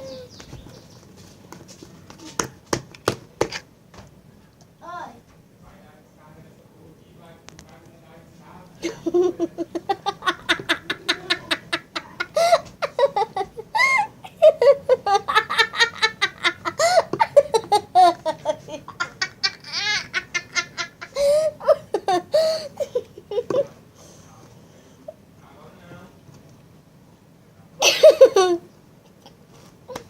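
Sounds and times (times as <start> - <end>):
girls giggling: 8.8 - 23.8, 27.8 - 30.0.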